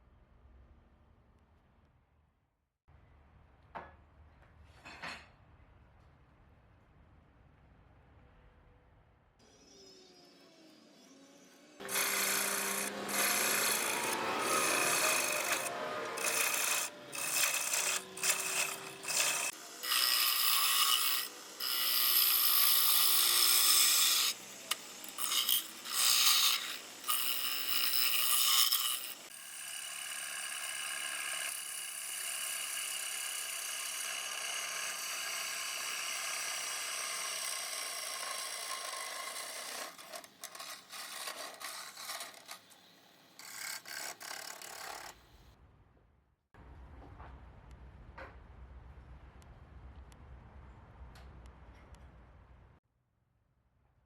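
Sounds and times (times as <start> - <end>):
power tool rasping wood: 9.7 - 45.2.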